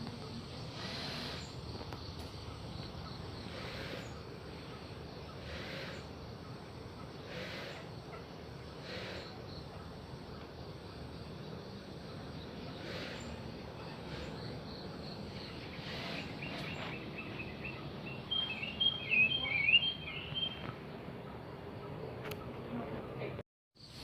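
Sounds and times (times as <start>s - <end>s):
steady outdoor hiss: 0.0s - 24.0s
bird chirping: 11.4s - 22.6s.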